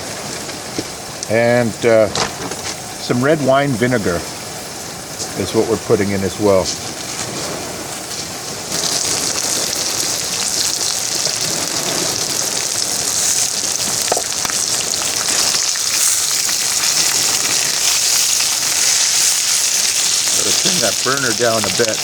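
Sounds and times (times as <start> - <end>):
food sizzling in a pan: 6.5 - 22.0.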